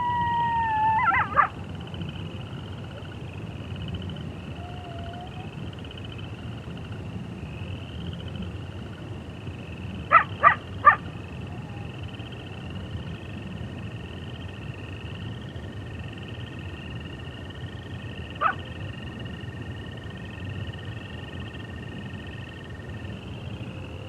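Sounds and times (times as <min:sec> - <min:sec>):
coyote yips: 0:00.0 - 0:01.5, 0:10.1 - 0:11.9, 0:18.4 - 0:18.6
coyote howling: 0:00.0 - 0:01.7, 0:04.5 - 0:05.6, 0:10.1 - 0:12.0, 0:18.4 - 0:18.7
frogs and toads trilling: 0:00.0 - 0:24.0.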